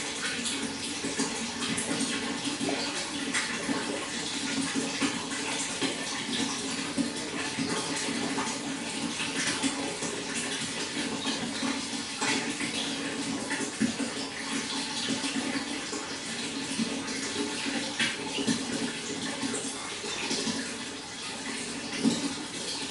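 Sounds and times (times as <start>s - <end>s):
running water splashing: 0.0s - 22.9s.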